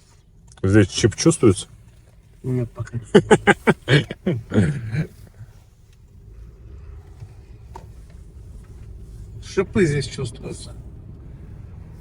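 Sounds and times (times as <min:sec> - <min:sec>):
car road and engine rumble: 0:00.0 - 0:12.0
man talking: 0:00.6 - 0:01.7, 0:02.4 - 0:05.2, 0:09.4 - 0:10.8.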